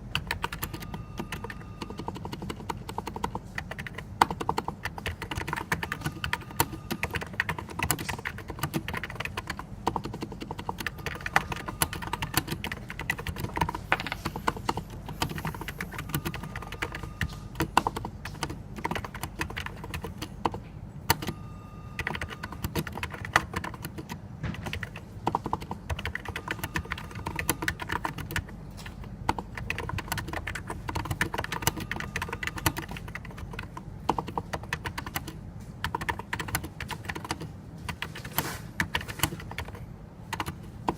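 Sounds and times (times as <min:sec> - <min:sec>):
fast keyboard typing: 0:00.0 - 0:40.9.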